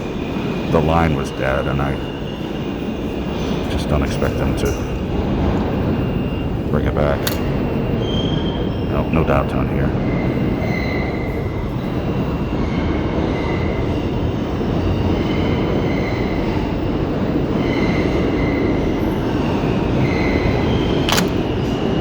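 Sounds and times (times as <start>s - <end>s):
subway train rumble: 0.0s - 22.0s
sharp click: 7.2s - 7.6s, 21.1s - 21.5s.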